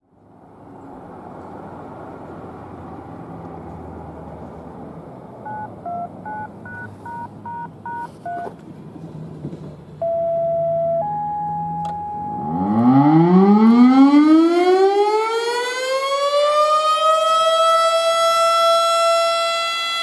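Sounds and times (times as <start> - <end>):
outdoor background noise: 0.0 - 20.0
touch-tone beeps: 5.5 - 8.5, 10.0 - 12.4.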